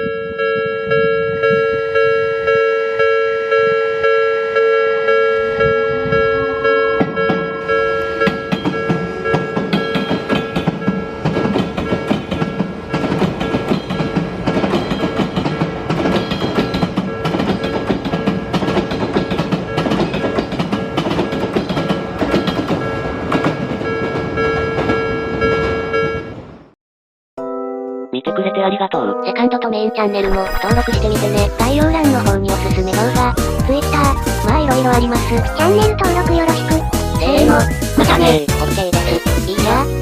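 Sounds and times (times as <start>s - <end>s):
crossing warning bell ringing: 0.0s - 26.5s
train wheels clacking on rail joints: 8.1s - 25.8s.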